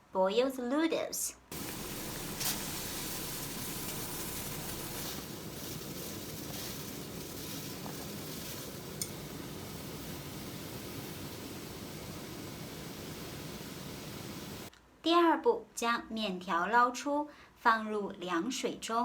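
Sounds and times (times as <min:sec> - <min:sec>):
water boiling in a pot: 0:01.5 - 0:14.7.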